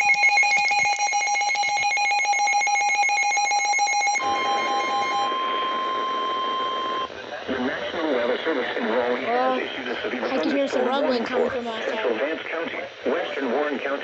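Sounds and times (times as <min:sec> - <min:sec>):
steady alarm tone: 0:00.0 - 0:07.1
trilling electronic alert: 0:00.0 - 0:07.1.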